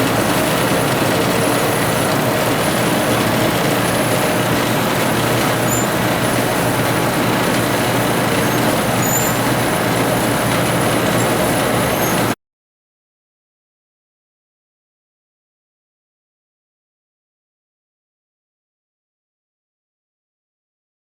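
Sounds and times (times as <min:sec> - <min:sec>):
machinery running with a hum: 0:00.0 - 0:12.4.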